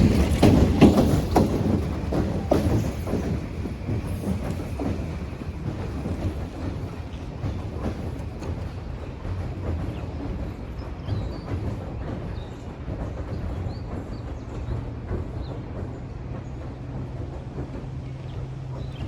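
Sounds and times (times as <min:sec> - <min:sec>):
knocks and clanks: 0:00.0 - 0:08.8
train rumbling on track: 0:00.0 - 0:19.0.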